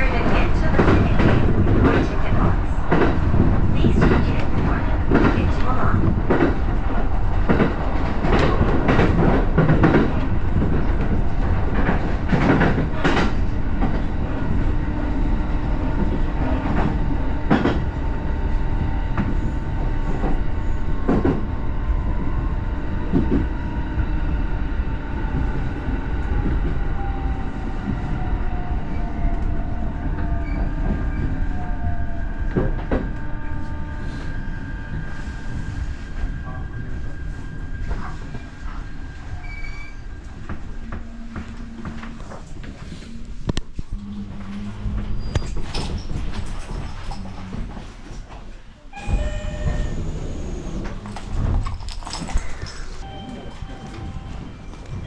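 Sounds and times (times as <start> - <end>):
train rumbling on rails: 0.0 - 55.0.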